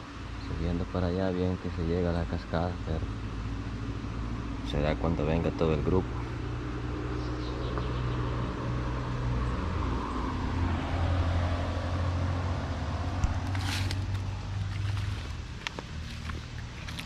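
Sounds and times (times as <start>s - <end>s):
vehicle engine drone: 0.0s - 17.0s
short sharp rustle: 13.4s - 15.3s.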